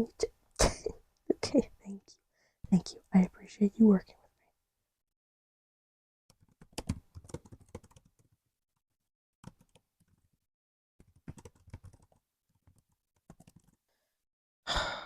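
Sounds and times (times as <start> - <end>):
laptop keyboard typing: 6.3 - 8.4, 9.4 - 10.3, 11.0 - 13.8.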